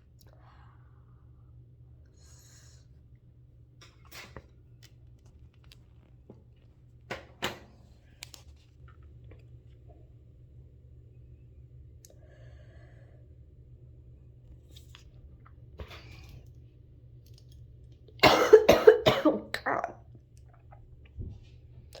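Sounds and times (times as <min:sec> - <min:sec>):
person coughing: 0:18.2 - 0:19.7.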